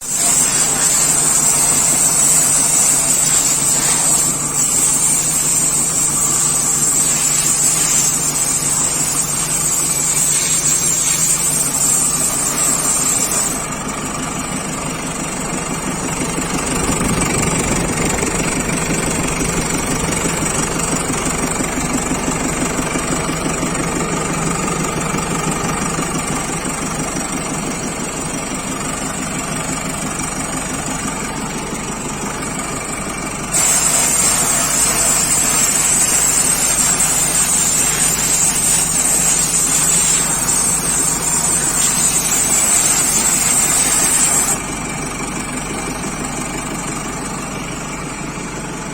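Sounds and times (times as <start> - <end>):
diesel engine running: 0.0 - 48.9
high hiss: 33.5 - 44.6.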